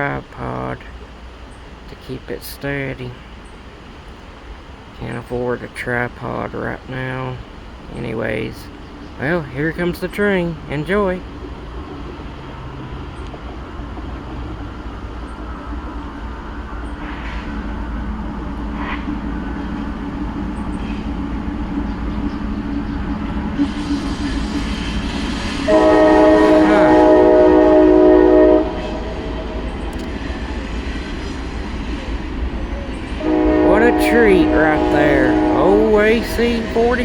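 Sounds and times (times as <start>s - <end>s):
diesel locomotives rumbling: 0.0s - 37.0s
locomotive air horn: 23.4s - 29.8s, 33.2s - 37.0s.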